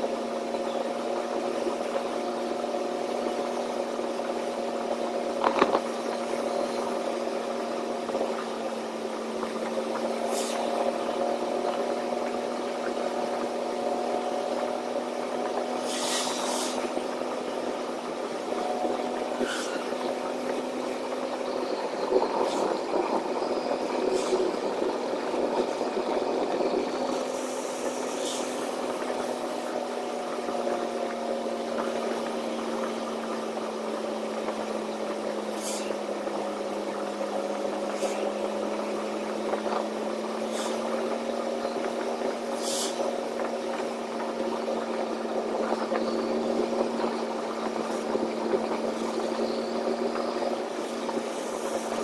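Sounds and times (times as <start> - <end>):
truck engine running: 0.0 - 52.0
brief hiss: 15.8 - 16.9.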